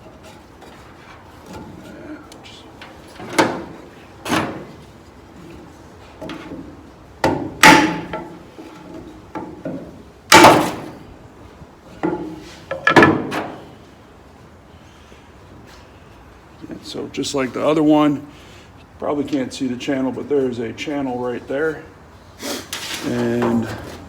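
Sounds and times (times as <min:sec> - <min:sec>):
knocks and clanks on aluminum: 0:02.8 - 0:11.1, 0:11.9 - 0:13.8.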